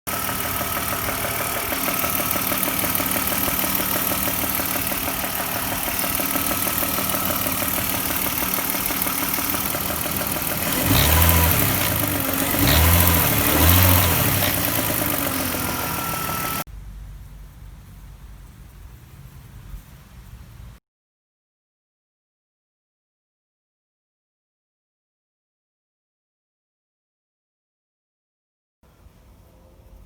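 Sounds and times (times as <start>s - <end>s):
car engine idling with knocking: 0.1s - 16.7s
car engine revving: 0.1s - 16.7s.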